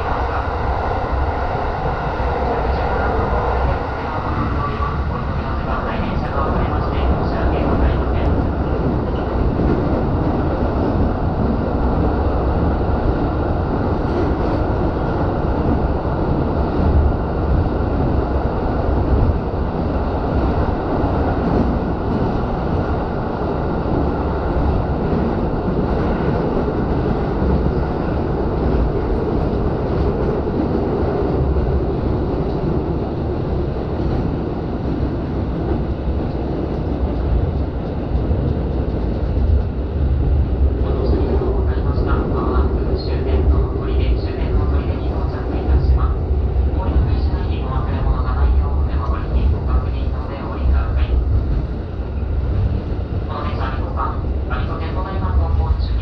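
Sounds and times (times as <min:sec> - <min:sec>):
train wheels rumbling on rails: 0:00.0 - 0:56.0.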